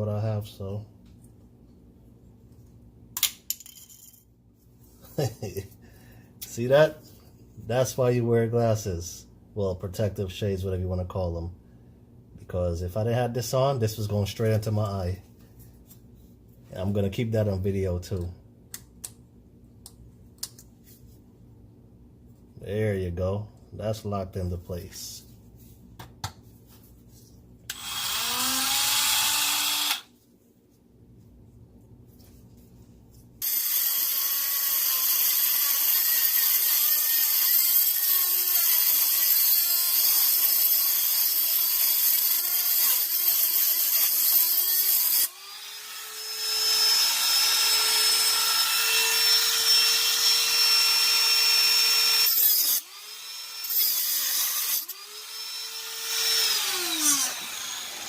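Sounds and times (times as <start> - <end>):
rotary tool cutting metal: 27.7 - 30.1, 33.4 - 58.0.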